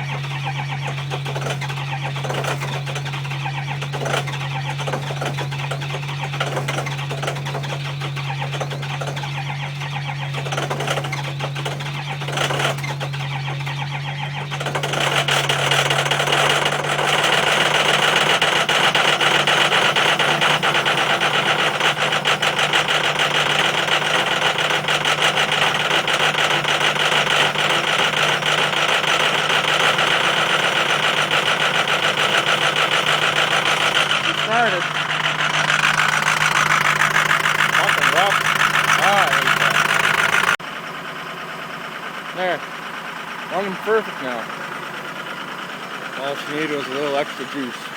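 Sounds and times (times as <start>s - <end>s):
diesel engine cranking and starting: 0.0s - 47.9s
rough diesel engine running: 0.0s - 47.9s.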